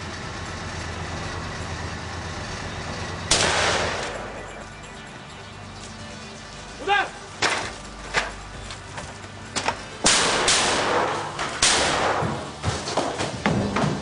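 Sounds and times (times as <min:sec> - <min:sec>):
shotgun shots: 0:03.3 - 0:04.3, 0:10.0 - 0:12.5.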